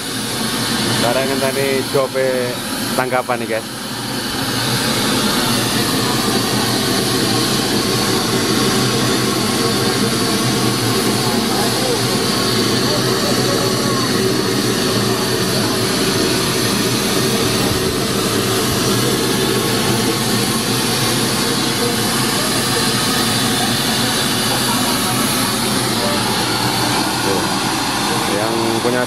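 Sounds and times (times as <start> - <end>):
loud rushing noise: 0.4 - 29.0.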